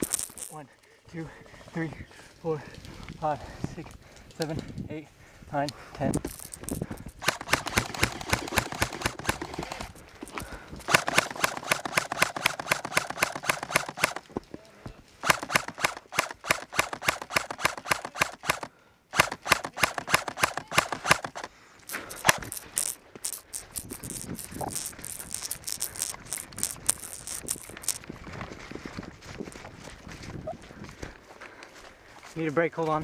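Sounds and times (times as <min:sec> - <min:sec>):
airsoft rifle firing bursts: 0:07.1 - 0:14.2, 0:15.2 - 0:28.0.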